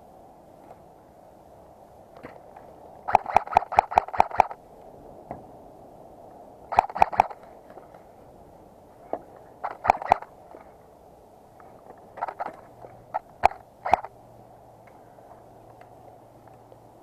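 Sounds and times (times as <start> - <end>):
airsoft guns firing: 3.1 - 4.6, 6.7 - 7.4, 9.6 - 10.3.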